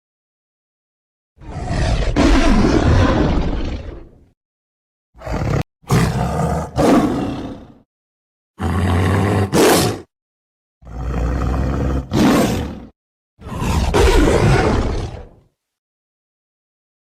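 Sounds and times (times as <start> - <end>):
tiger roaring: 1.4 - 4.2, 5.2 - 7.8, 8.6 - 10.1, 10.8 - 15.4.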